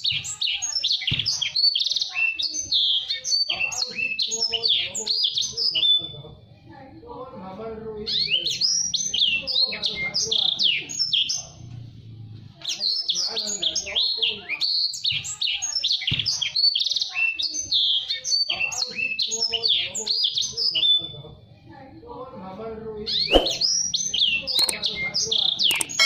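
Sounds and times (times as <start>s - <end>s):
bird singing chirps and trills: 12.7s - 21.1s, 23.2s - 26.0s.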